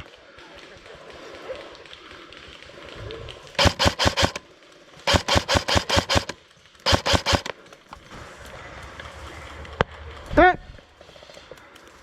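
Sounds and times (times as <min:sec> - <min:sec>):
airsoft gun shots: 0:03.6 - 0:07.6.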